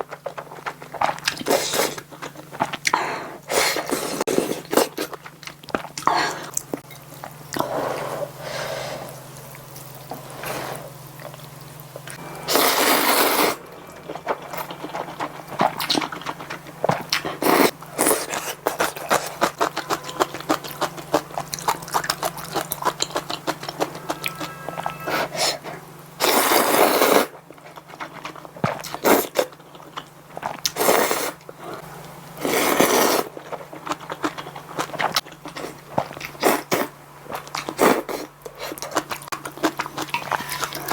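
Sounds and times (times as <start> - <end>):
wet chewing: 0.0 - 3.0, 3.6 - 25.0, 32.4 - 40.9
faint low hum: 0.0 - 30.7
slurping noodles: 12.5 - 19.8, 21.5 - 27.3.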